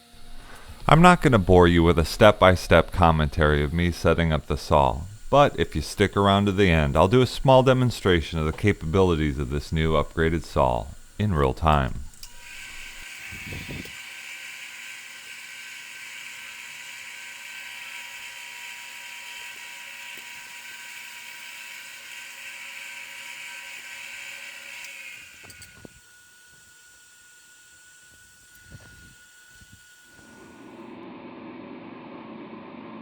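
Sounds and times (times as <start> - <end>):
faint steady whine: 0.0 - 14.0
bandsaw running with hiss and whine: 0.0 - 30.9.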